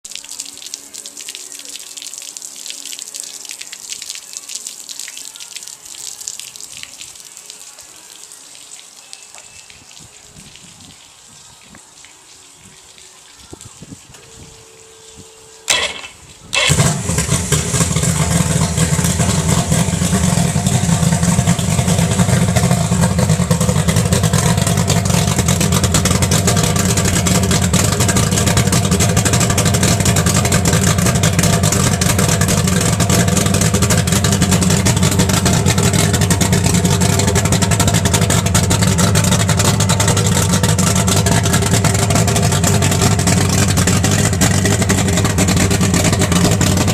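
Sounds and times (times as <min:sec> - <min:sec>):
outboard motor cranking: 0:15.7 - 0:46.9
outboard motor running: 0:15.7 - 0:46.9.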